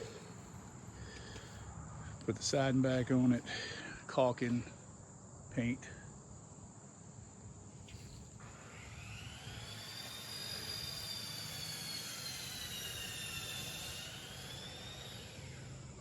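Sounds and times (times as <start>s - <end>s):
aircraft engine drone: 0.0s - 5.0s, 7.4s - 16.0s.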